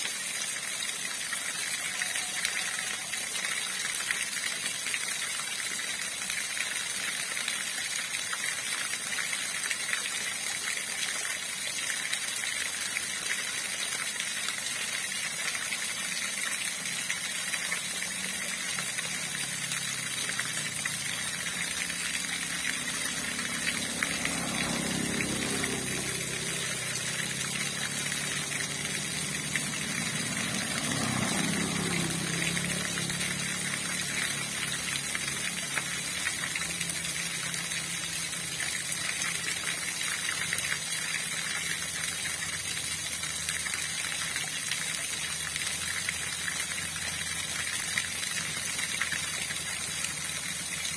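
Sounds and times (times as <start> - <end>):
river water rushing: 11.4 - 50.9.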